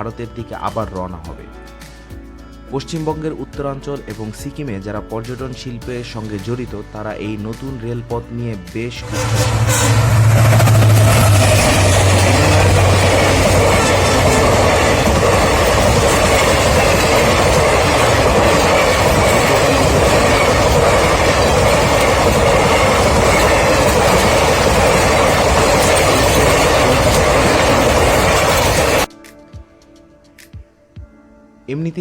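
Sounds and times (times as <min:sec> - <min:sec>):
train wheels on rails: 0:09.0 - 0:29.1.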